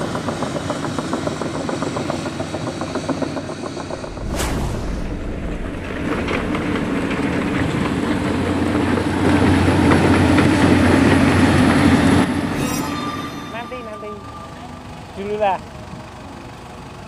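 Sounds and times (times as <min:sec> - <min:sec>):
diesel truck engine running: 0:14.4 - 0:17.0.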